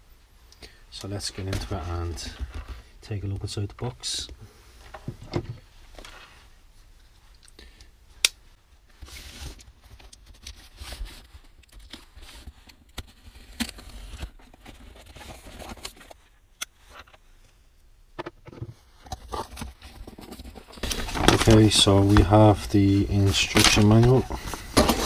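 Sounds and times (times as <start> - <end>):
cardboard packing rustling: 9.0 - 17.0, 18.7 - 25.0.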